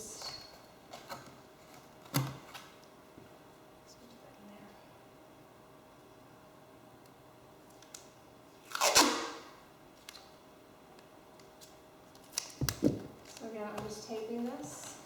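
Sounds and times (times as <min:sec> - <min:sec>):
tape ripped off roll: 0:08.7 - 0:09.6.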